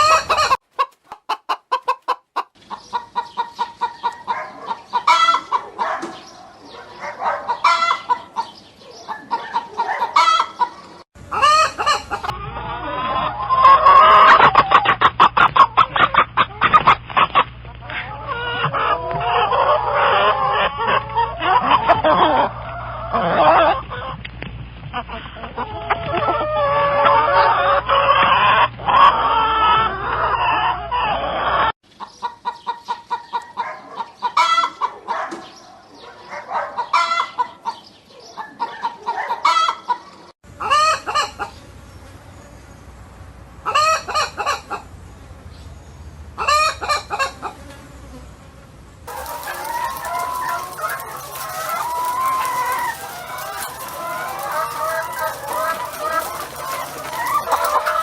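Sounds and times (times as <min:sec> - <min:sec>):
chickens clucking and calling: 0:00.0 - 0:41.6, 0:43.6 - 0:44.9, 0:46.4 - 0:47.6, 0:49.1 - 0:58.0
rooster crowing: 0:49.1 - 0:58.0.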